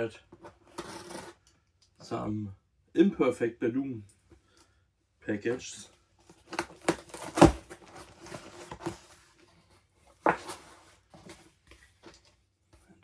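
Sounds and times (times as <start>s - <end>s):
packaging knocks and rustles: 6.2s - 9.4s, 10.1s - 12.3s.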